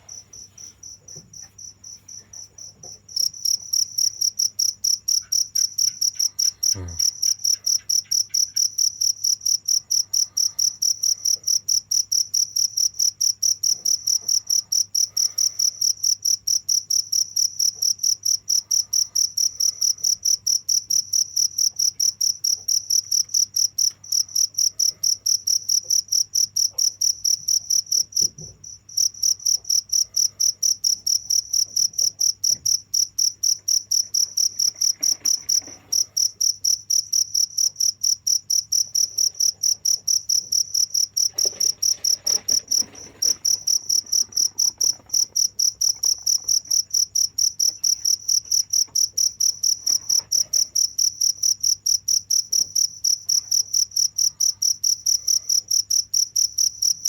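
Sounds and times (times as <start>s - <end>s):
cricket chirping: 0.0s - 57.0s.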